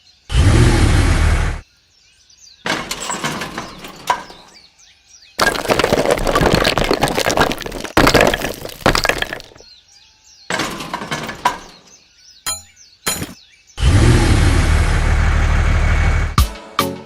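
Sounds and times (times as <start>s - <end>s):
small birds chirping: 0.0s - 0.4s, 1.6s - 5.4s, 9.6s - 13.8s
dense clattering knocks: 2.6s - 4.5s, 5.4s - 9.6s, 10.5s - 13.4s.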